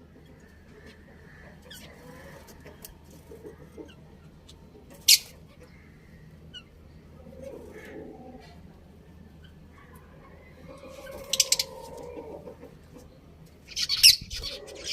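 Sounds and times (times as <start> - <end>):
budgerigars chirping and chattering: 5.0 - 5.7, 10.8 - 11.9, 13.6 - 14.9.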